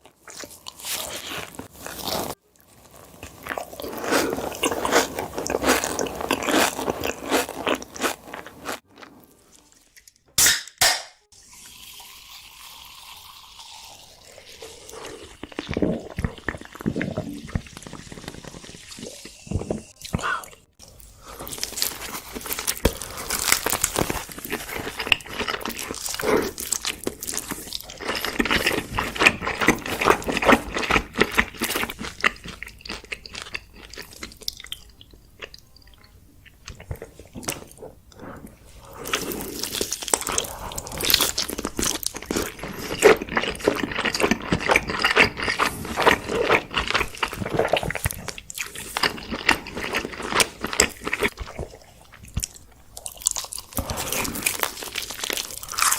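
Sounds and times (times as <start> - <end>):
crunchy bites and chewing: 0.0 - 9.2, 21.2 - 35.6, 36.4 - 55.9.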